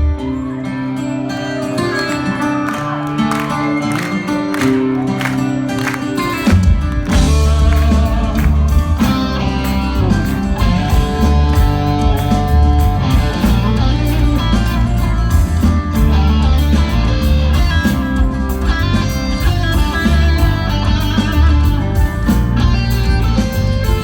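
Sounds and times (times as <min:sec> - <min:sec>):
electric guitar: 0:00.0 - 0:24.0
live rock band playing: 0:00.0 - 0:24.0
bass line: 0:05.5 - 0:24.0.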